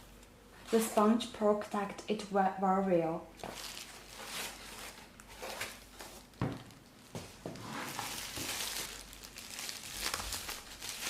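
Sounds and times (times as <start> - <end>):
packaging rustling and crinkling: 3.4 - 11.0.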